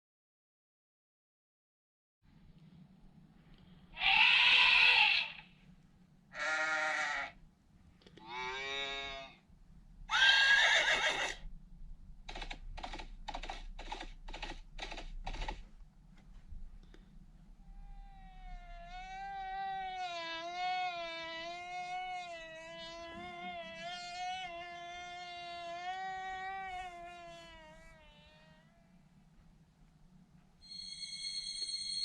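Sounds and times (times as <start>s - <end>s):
comic pitched cries: 4.0s - 5.4s, 10.1s - 11.4s, 17.6s - 29.0s.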